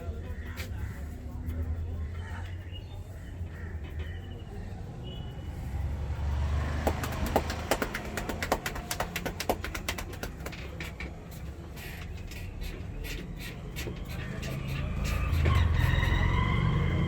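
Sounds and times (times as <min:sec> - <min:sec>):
street traffic rumble: 0:00.0 - 0:17.0
hands slapping and clicking: 0:06.5 - 0:11.1.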